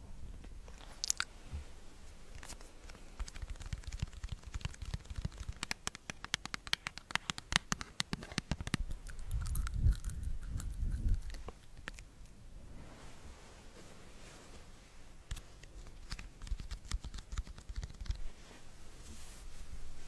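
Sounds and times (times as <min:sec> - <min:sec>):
crisp clicks and ticks: 0:02.3 - 0:12.4, 0:15.3 - 0:18.2.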